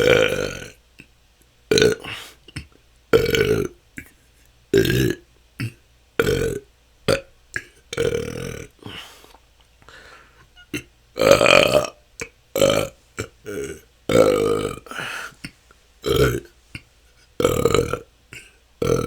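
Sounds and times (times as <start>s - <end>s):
person belching: 0.0s - 0.8s, 1.7s - 3.8s, 4.7s - 9.2s, 10.6s - 16.6s, 17.4s - 19.0s.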